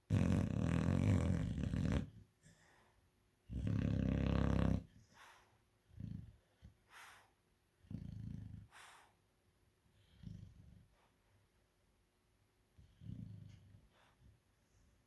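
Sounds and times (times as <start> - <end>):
dog snoring: 0.1 - 2.2, 3.5 - 5.0, 5.9 - 6.7, 7.8 - 9.0, 10.0 - 11.0, 12.8 - 14.1
dog hissing breath out: 5.0 - 5.6, 6.8 - 7.4, 8.7 - 9.2.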